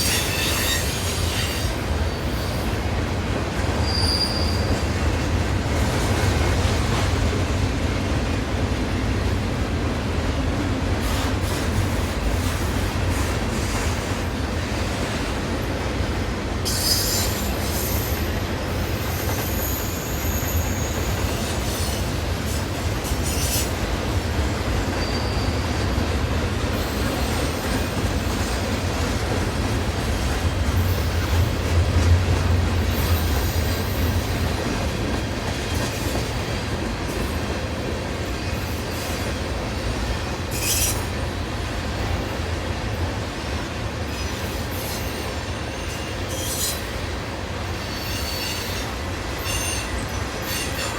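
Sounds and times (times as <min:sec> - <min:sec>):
high-pitched wheel squeals: 0:00.0 - 0:01.7, 0:03.8 - 0:04.8, 0:16.7 - 0:18.3, 0:18.9 - 0:22.1, 0:25.0 - 0:25.7, 0:40.5 - 0:41.1, 0:44.2 - 0:46.8, 0:47.8 - 0:50.9
freight train rumbling: 0:00.0 - 0:50.9.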